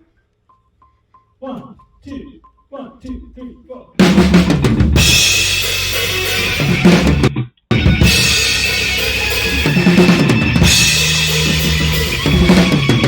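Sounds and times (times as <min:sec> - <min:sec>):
band playing: 0:04.0 - 0:13.0
loud drum kit: 0:04.0 - 0:13.0
sustained bass notes: 0:04.0 - 0:13.0.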